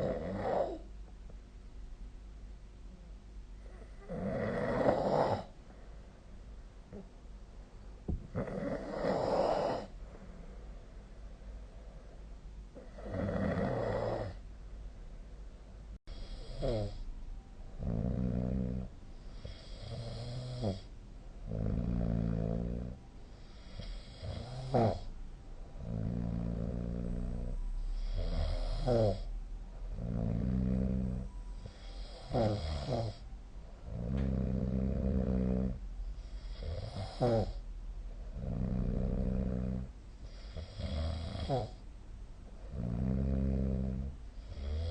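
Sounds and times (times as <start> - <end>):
person snoring: 0.0 - 0.8, 3.6 - 5.5, 8.3 - 10.0, 12.8 - 14.4, 16.1 - 17.0, 17.8 - 20.9, 21.5 - 25.1, 25.8 - 29.3, 30.0 - 33.2, 33.9 - 37.6, 38.4 - 41.8, 42.7 - 44.9.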